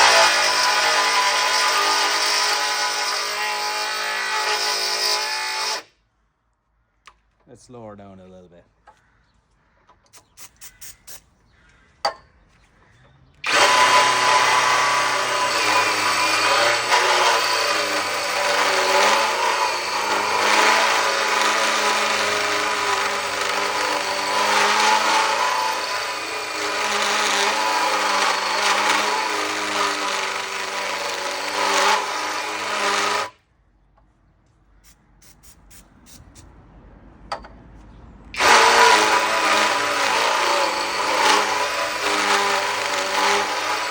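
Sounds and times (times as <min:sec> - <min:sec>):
hole saw cutting steel: 0:00.0 - 0:05.9, 0:13.4 - 0:33.4, 0:38.4 - 0:43.9.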